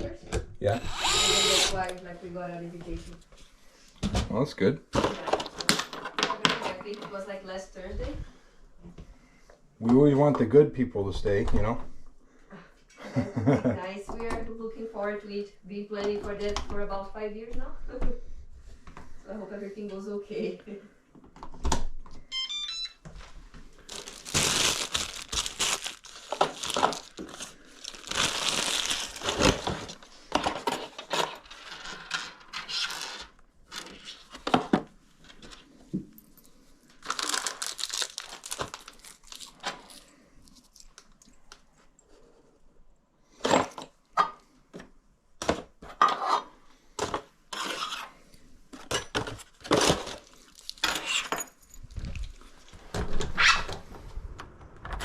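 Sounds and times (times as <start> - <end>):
short beeps: 22.3 - 23.0
packaging crinkling and tearing: 23.8 - 30.1, 37.0 - 41.2, 49.6 - 50.9.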